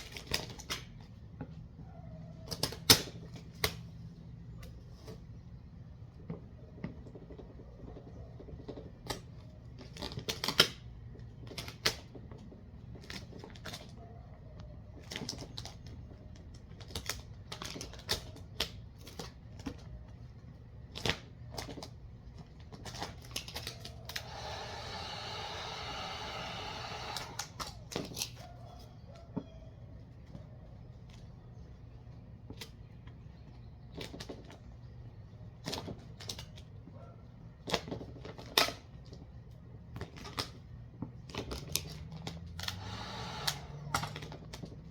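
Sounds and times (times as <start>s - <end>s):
rasping hiss: 24.2s - 27.4s.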